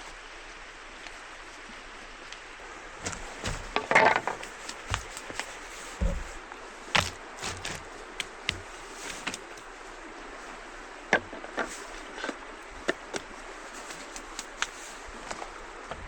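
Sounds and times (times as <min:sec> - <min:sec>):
steady rushing hiss: 0:00.0 - 0:16.0
sharp clicks and light knocks: 0:03.0 - 0:09.7, 0:11.6 - 0:15.5.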